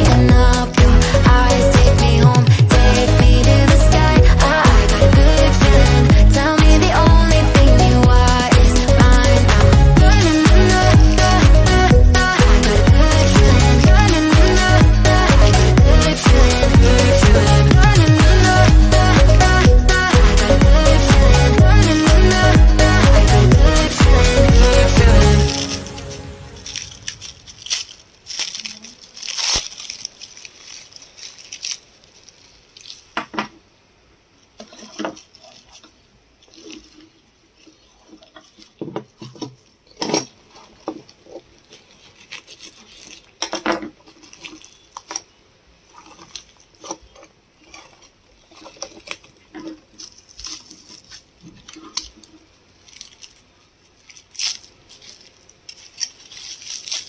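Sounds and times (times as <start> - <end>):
packaging rustling and crinkling: 25.4 - 57.0.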